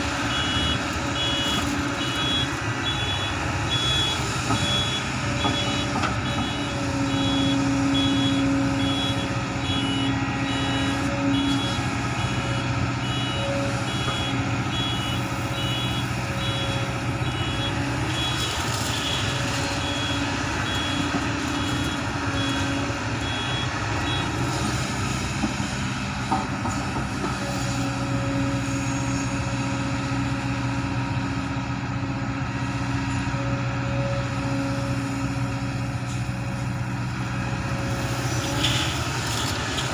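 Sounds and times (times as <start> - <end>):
excavator diesel engine working: 0.0 - 39.9
reversing alarm beeping: 0.2 - 24.4.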